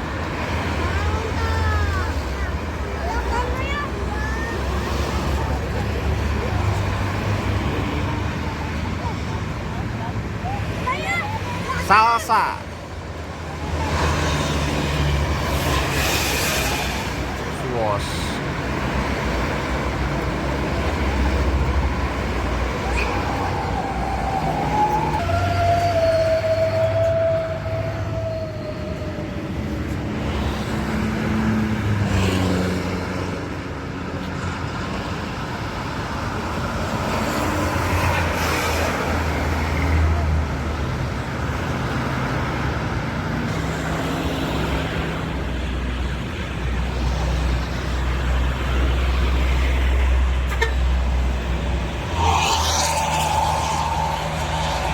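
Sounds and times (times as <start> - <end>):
large vehicles passing: 0.0 - 54.9.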